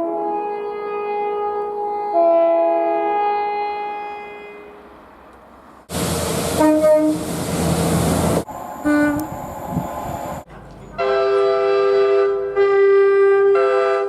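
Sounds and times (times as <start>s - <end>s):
train horn: 0.0s - 4.8s, 6.5s - 7.3s, 8.8s - 9.3s, 11.0s - 14.0s
train passing with rushing noise: 4.8s - 11.3s.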